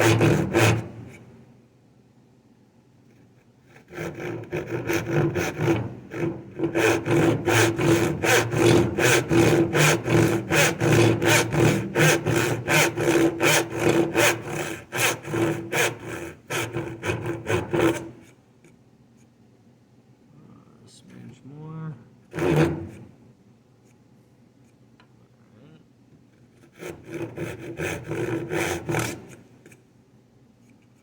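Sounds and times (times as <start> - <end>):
hand saw cutting wood: 0.0 - 1.2, 3.6 - 18.3, 22.3 - 23.1, 26.6 - 29.8.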